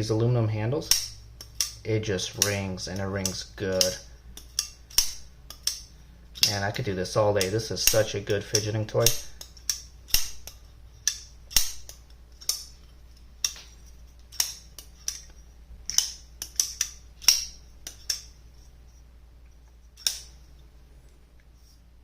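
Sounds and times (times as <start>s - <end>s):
folding knife snapping open and shut: 20.0s - 20.4s.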